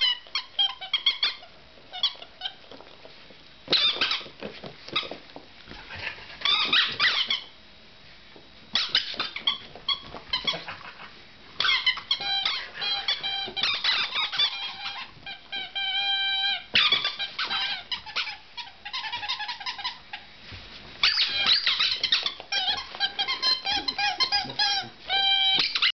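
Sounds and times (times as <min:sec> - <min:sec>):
rubber squeaky toy squeaking: 0:00.0 - 0:02.6, 0:03.7 - 0:04.3, 0:06.4 - 0:07.5, 0:08.7 - 0:10.7, 0:11.6 - 0:20.3, 0:21.0 - 0:26.0.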